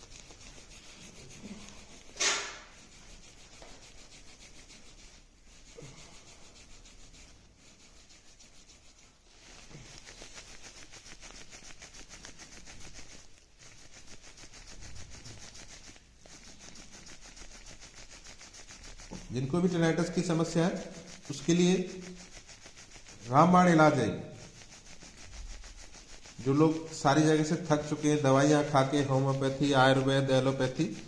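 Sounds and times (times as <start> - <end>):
hands rubbing skin: 0.0 - 31.0
sharp knock: 2.2 - 2.6.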